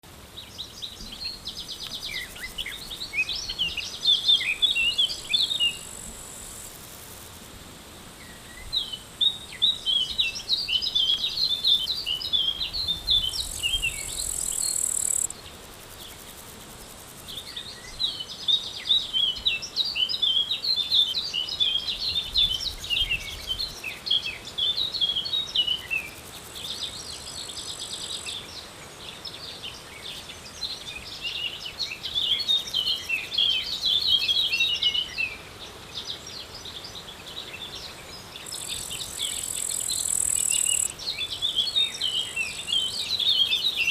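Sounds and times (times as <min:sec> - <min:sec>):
high insect buzz: 0:00.1 - 0:28.7, 0:38.2 - 0:43.9
songbird twittering song: 0:00.3 - 0:06.7, 0:08.2 - 0:16.3, 0:17.2 - 0:43.9.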